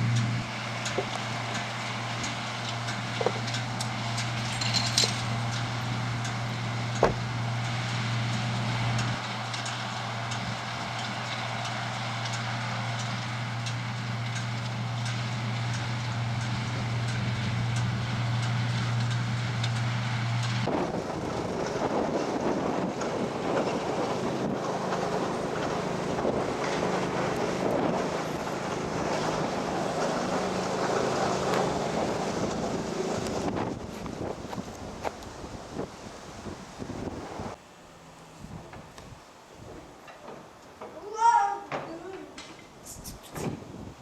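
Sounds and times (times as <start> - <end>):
engine humming: 0.0 - 44.0
wind buffeting microphone: 13.4 - 37.6, 38.4 - 40.0, 43.0 - 44.0.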